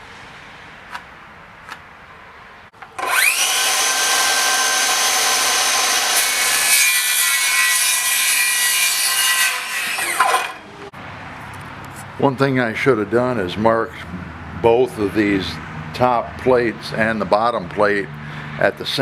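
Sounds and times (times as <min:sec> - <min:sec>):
power saw whining: 0:02.8 - 0:10.9.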